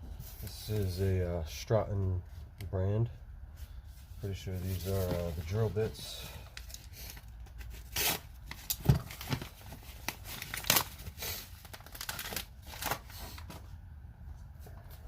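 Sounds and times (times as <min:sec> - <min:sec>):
packaging rustling and crinkling: 0:04.3 - 0:13.7.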